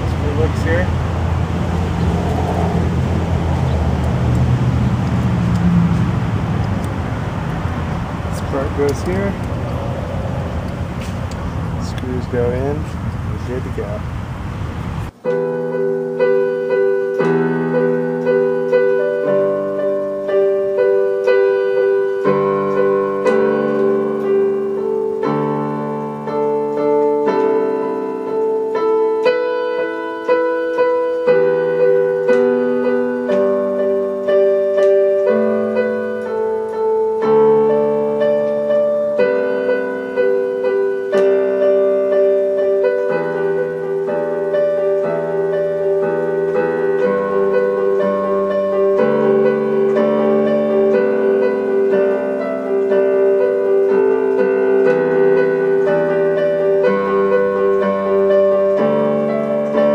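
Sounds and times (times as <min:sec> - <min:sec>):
gentle piano music: 0:00.0 - 0:59.9.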